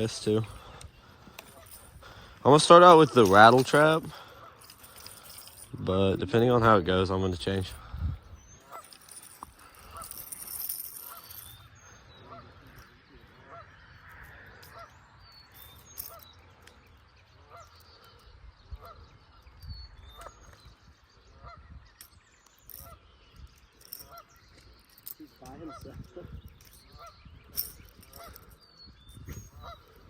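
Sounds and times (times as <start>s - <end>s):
geese honking: 12.2s - 15.0s, 17.4s - 18.1s, 25.4s - 26.0s.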